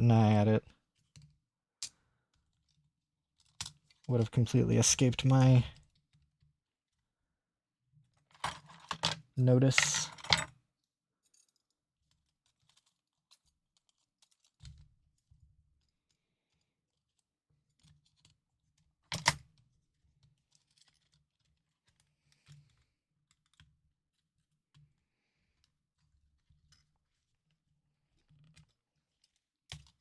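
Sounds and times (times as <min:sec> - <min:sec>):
faint clicks and taps of small parts: 0:00.9 - 0:04.1, 0:11.2 - 0:30.0.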